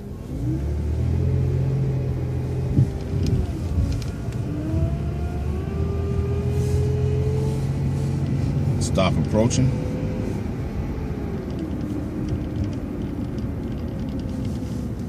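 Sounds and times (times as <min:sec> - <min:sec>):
bus engine pulling away: 0:00.0 - 0:15.0.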